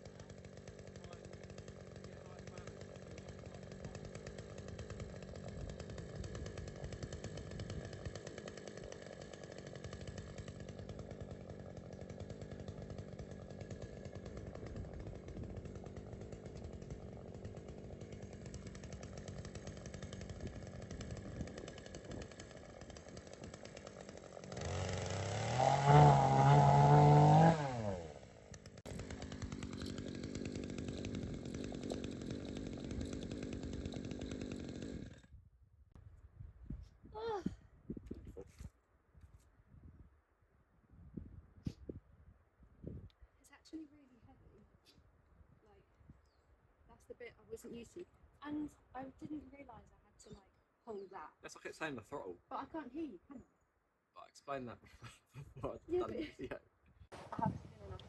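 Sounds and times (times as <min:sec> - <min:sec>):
chainsaw running and revving: 0:00.0 - 0:35.3.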